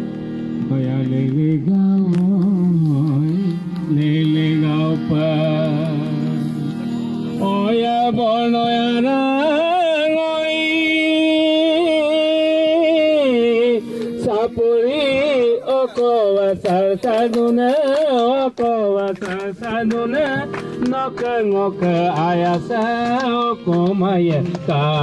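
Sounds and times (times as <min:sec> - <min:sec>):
steady drone: 0:00.0 - 0:15.5.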